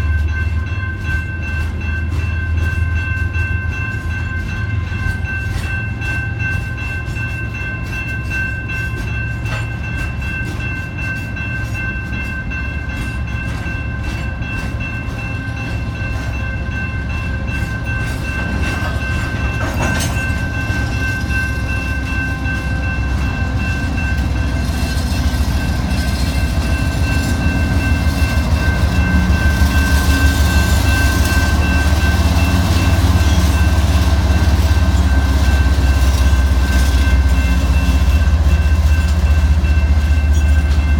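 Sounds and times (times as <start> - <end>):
train cars rumbling past: 0.0 - 40.9.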